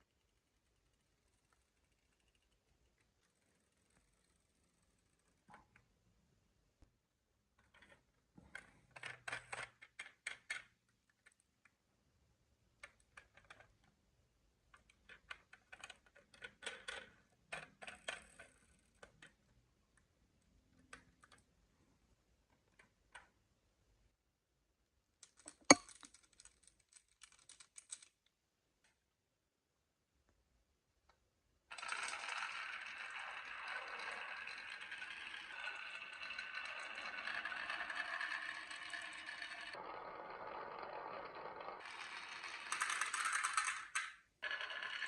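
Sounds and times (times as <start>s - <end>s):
marbles clattering on wooden blocks: 31.7s - 39.8s, 41.8s - 45.0s.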